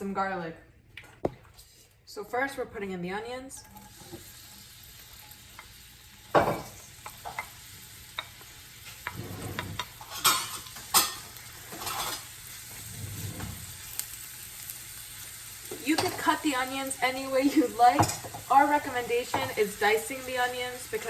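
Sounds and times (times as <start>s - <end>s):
onions sizzling in oil: 3.6s - 21.0s
utensil scraping a pan: 8.8s - 13.9s.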